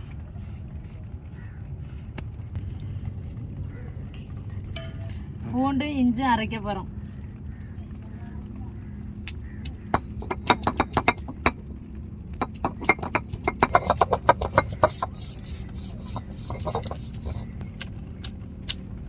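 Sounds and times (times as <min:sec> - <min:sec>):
stone roller knocking on stone: 0:09.9 - 0:11.6, 0:12.4 - 0:17.4
stone scraping: 0:12.4 - 0:17.6.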